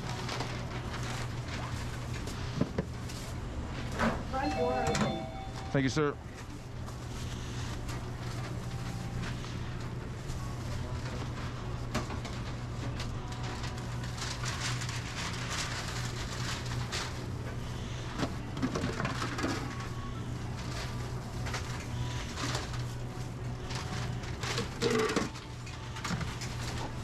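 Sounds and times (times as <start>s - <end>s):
low hum of kitchen equipment: 0.0s - 27.0s
clatter of utensils and containers: 18.2s - 19.9s, 23.8s - 26.9s.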